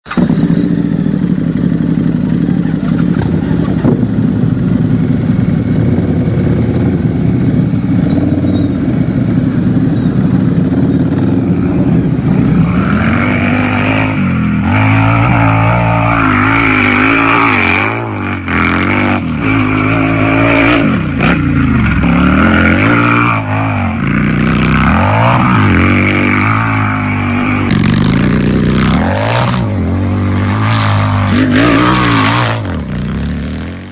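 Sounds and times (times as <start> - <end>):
motorcycle engine idling and revving: 0.0 - 33.9.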